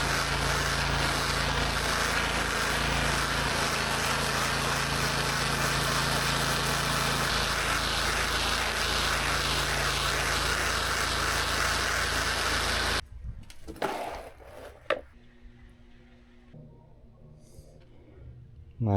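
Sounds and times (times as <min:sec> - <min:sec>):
high-pressure water spraying concrete: 0:00.0 - 0:13.0
pressure washer engine humming: 0:00.0 - 0:13.0.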